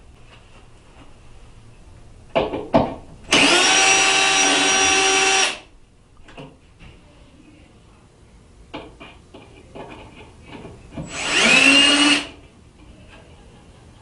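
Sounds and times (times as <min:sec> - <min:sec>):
cordless screwdriver motor whine: 0:11.1 - 0:12.3.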